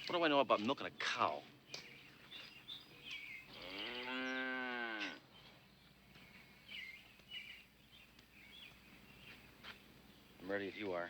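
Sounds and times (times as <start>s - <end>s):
cow mooing: 3.6s - 5.2s.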